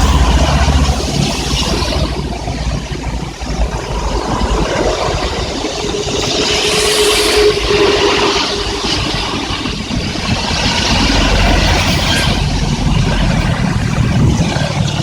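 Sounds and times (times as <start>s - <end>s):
heavy rain: 0.0s - 15.0s
tyres hissing on wet road: 0.0s - 15.0s
vehicle rumble: 0.0s - 15.0s.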